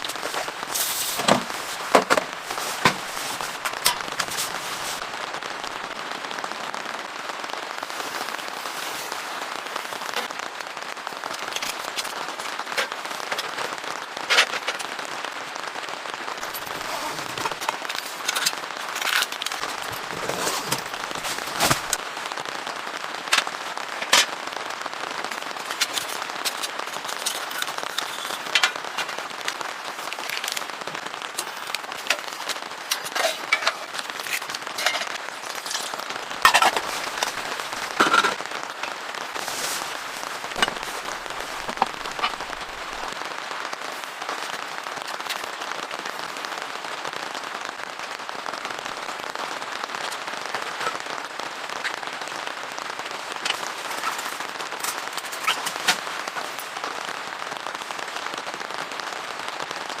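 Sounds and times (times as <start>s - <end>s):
steady rain: 0.0s - 60.0s
sharp taps and crackles: 7.4s - 46.6s.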